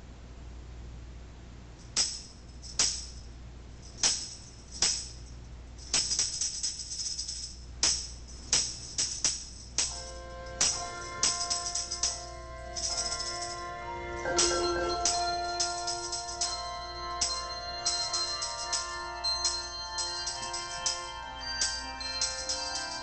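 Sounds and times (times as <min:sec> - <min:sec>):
jingling percussion strikes: 0:03.8 - 0:23.0
handbells ringing: 0:09.9 - 0:23.0.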